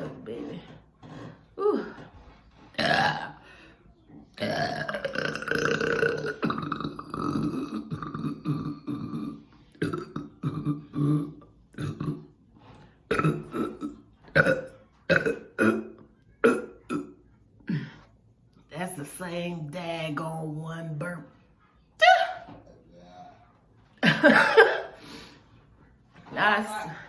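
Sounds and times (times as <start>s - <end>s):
woman burping loudly: 2.7s - 3.5s, 4.3s - 12.4s, 13.1s - 17.9s, 24.0s - 25.0s.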